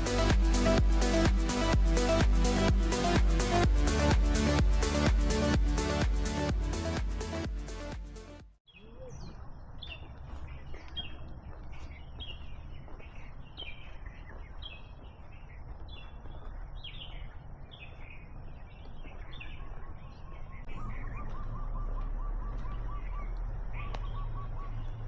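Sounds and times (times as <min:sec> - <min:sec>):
low background rumble: 0:00.0 - 0:08.0
music: 0:00.0 - 0:08.5
bird chirping: 0:08.7 - 0:25.0.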